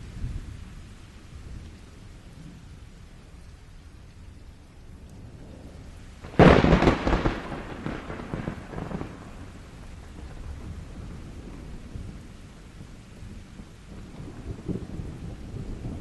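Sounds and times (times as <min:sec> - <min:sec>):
steady rain: 0:00.0 - 0:16.0
thunderclap rumbling: 0:05.2 - 0:16.0.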